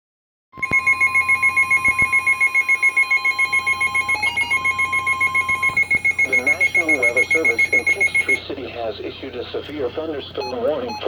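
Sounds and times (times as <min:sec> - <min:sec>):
rapid high-pitched alarm beeps: 0:00.6 - 0:08.4
steady alarm tone: 0:00.6 - 0:08.4.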